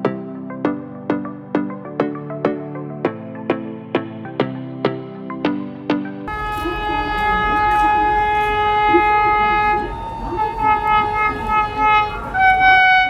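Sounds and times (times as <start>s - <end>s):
low running rumble: 6.3s - 13.0s
train horn blast: 6.3s - 13.0s.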